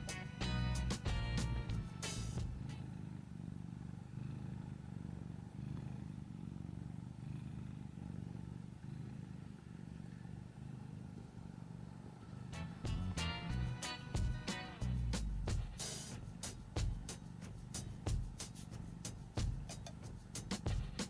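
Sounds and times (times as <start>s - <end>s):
cat purring: 0.0s - 21.0s.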